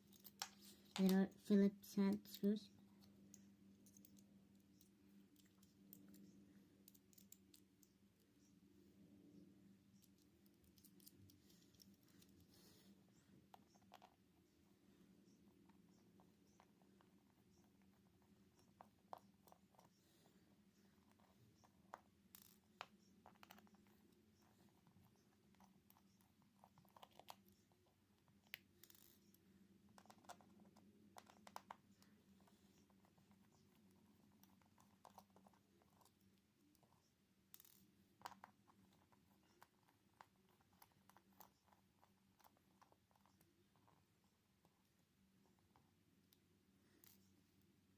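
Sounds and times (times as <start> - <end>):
tiny screws being handled: 0.0 - 1.3, 2.1 - 8.7, 9.3 - 12.6, 20.7 - 44.9, 47.0 - 47.4
screwdriver clicks and scratches: 3.0 - 8.5, 10.0 - 12.5, 28.4 - 29.4, 37.5 - 43.9.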